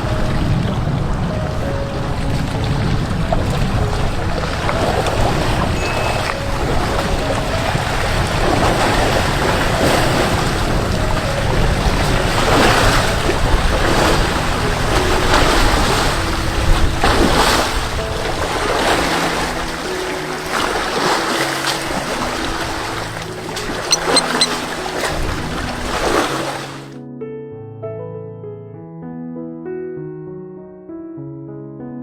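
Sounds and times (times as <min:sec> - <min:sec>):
wind buffeting microphone: 0:00.0 - 0:21.0
soft music with held notes: 0:00.0 - 0:32.0.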